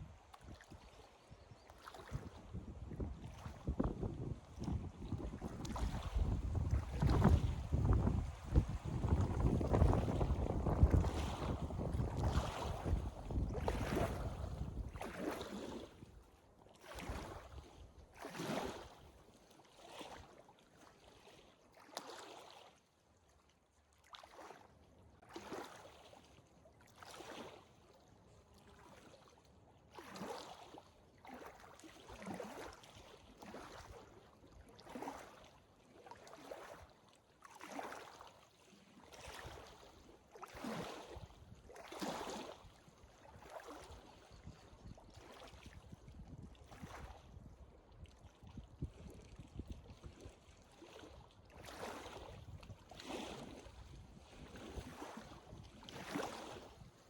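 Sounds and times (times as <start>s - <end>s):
wind buffeting microphone: 2.1s - 15.0s.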